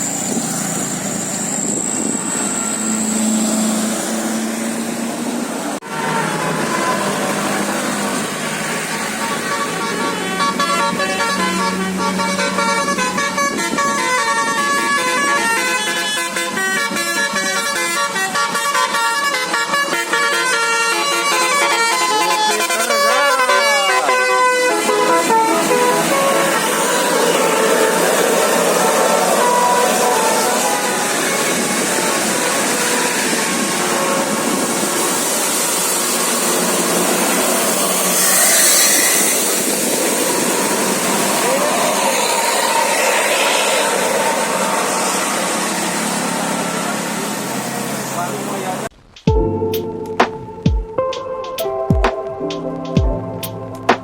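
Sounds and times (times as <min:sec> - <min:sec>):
road traffic rushing: 0:00.0 - 0:54.0
musical air horn melody: 0:05.8 - 0:08.2, 0:09.0 - 0:35.2, 0:38.0 - 0:39.7, 0:49.3 - 0:54.0.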